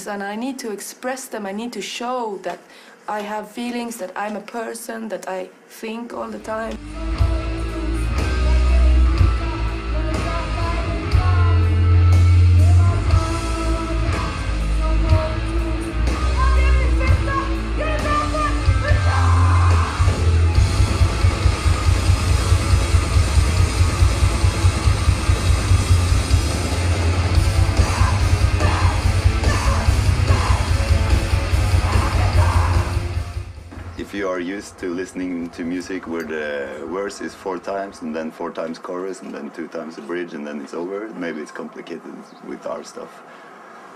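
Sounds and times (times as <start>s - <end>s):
sung and yelled vocals: 6.4s - 20.6s, 27.2s - 33.2s
punk rock band playing: 6.9s - 34.0s
shouted vocals: 16.2s - 20.3s, 27.5s - 33.1s.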